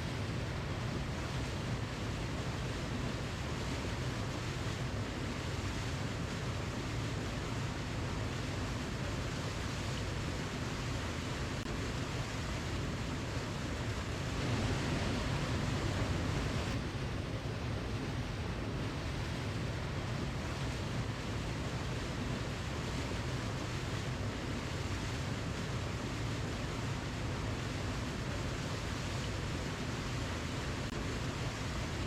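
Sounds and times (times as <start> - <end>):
waterfall rushing: 12.0 - 16.8.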